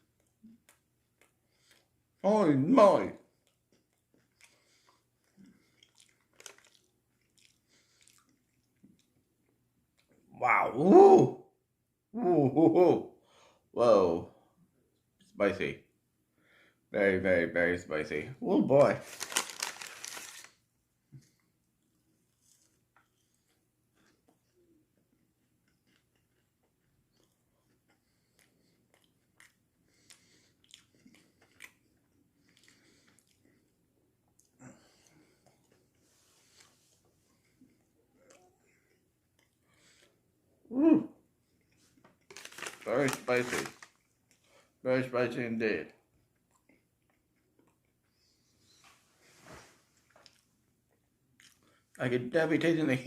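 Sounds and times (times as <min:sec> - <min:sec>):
chewing and mouth smacks: 0:03.3 - 0:10.2, 0:22.4 - 0:40.2, 0:46.1 - 0:48.8, 0:50.0 - 0:52.0.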